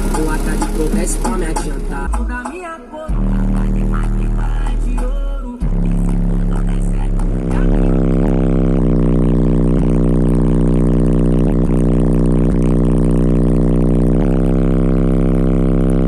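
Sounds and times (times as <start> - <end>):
beat ticks: 0.0 - 2.6
deep bass drone from subwoofer: 0.0 - 16.0.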